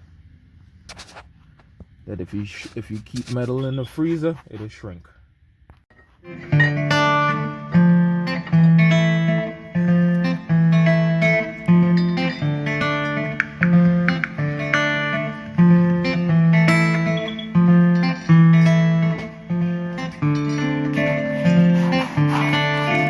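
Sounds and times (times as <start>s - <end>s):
guitar plucking notes: 6.2s - 23.0s.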